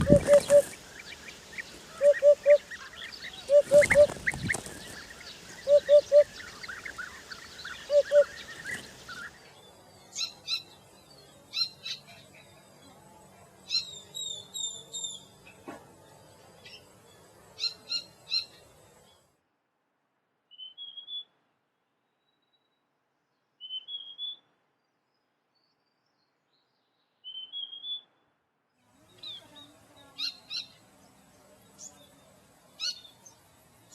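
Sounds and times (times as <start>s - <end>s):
high bird chirping: 0.0s - 9.4s.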